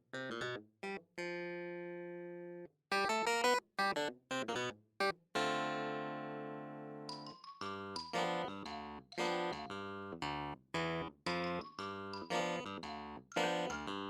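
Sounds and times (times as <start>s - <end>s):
plucked background music: 7.1s - 10.0s, 10.9s - 14.0s.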